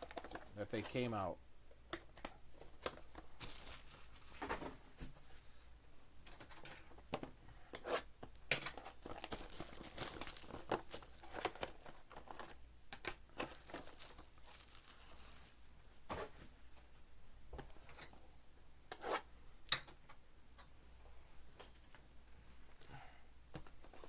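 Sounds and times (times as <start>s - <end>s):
plastic packaging crinkling: 0.0s - 1.0s, 2.8s - 4.4s, 8.7s - 12.6s, 13.3s - 15.6s.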